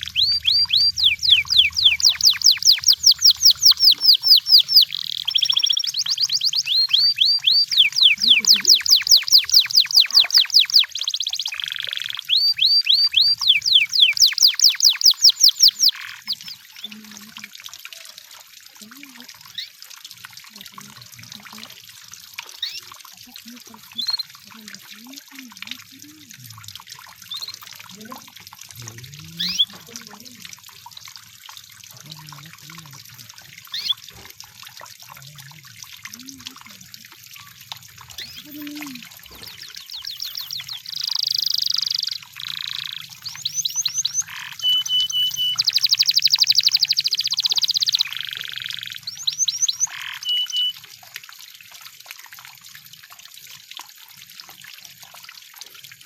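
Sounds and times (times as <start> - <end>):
canary singing trills: 0.0 - 17.4, 22.5 - 26.2, 27.2 - 30.4, 33.7 - 34.2, 36.2 - 50.8.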